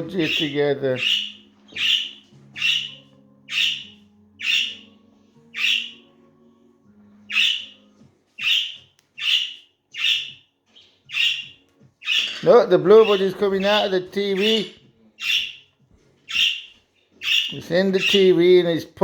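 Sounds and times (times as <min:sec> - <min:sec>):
budgerigar squawking: 0:00.0 - 0:04.9, 0:05.5 - 0:06.0, 0:07.3 - 0:07.8, 0:08.4 - 0:10.4, 0:11.1 - 0:15.6, 0:16.3 - 0:18.4.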